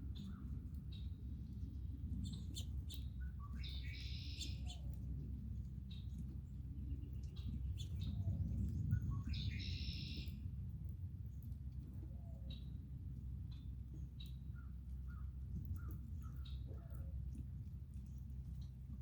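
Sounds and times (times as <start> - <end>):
low steady rumble: 0.0 - 19.0
songbirds chirping: 0.0 - 19.0.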